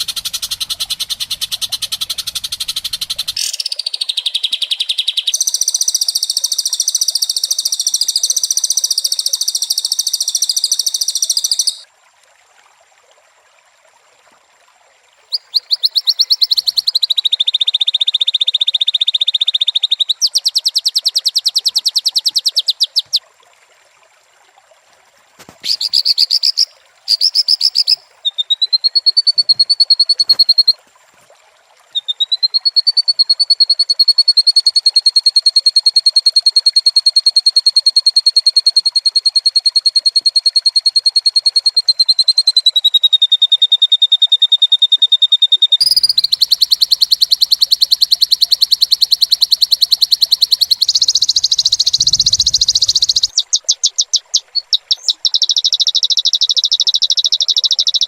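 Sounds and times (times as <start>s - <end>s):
bird singing rattling notes: 0.0s - 11.8s, 15.3s - 17.0s, 19.9s - 23.2s, 25.6s - 30.8s, 45.8s - 57.0s.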